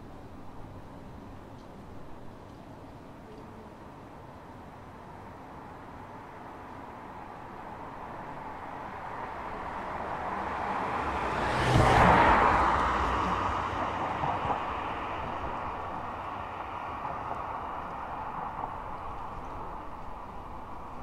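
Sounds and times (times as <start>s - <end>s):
vehicle passing close by: 9.3s - 18.0s.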